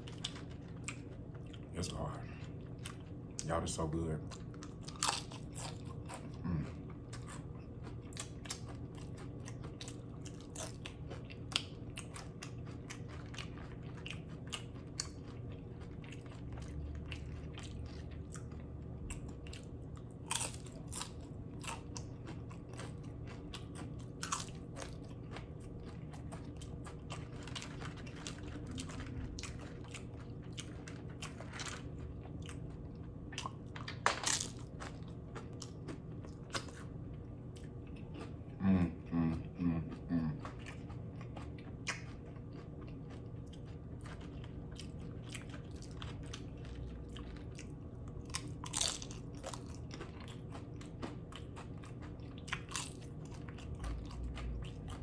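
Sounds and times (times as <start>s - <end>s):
tortilla chips crunching: 0.0s - 38.4s, 40.4s - 55.0s
person chewing: 0.0s - 55.0s
steady low hum: 0.0s - 55.0s.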